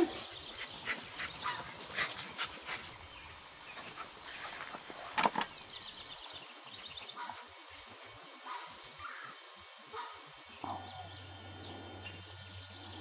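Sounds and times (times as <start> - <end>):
bird calls: 0.0 - 2.3, 5.4 - 13.0.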